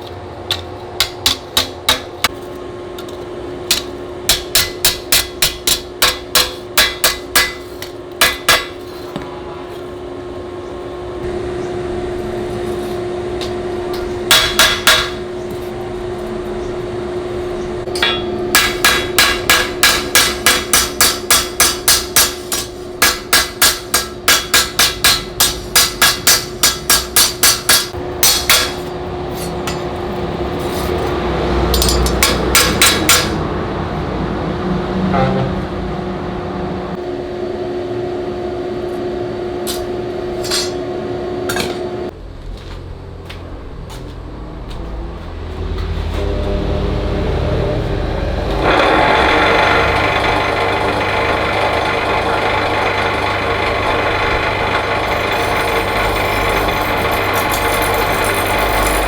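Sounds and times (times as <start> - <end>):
steady hum: 0.0 - 43.8, 46.2 - 59.0
hammer striking metal on anvil: 0.5 - 2.4, 3.0 - 9.0, 13.3 - 15.6, 17.8 - 30.2, 31.7 - 33.5, 39.7 - 40.8.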